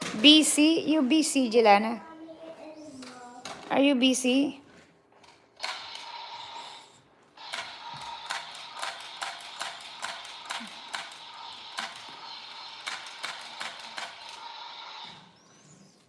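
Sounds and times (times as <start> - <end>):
regular clicks: 5.2 - 6.7, 7.4 - 15.2
toy power tool whirring buzz: 5.6 - 15.4.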